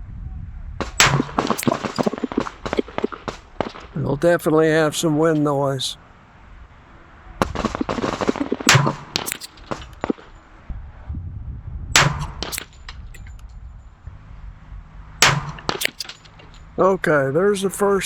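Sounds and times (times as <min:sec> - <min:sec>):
wind rumbling on microphone: 0:00.0 - 0:18.0
fainter distant gunshots: 0:00.8 - 0:10.6, 0:12.0 - 0:13.4, 0:14.1 - 0:17.6
loud pistol shots: 0:00.8 - 0:10.6, 0:12.0 - 0:13.3, 0:15.2 - 0:16.8.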